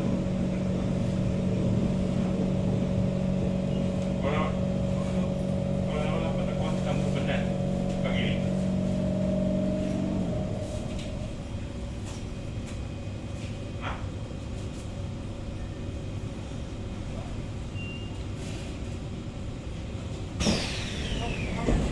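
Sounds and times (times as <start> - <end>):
electric traction motor whine: 0.0 - 12.5, 20.4 - 21.9
low train rumble: 0.0 - 21.9.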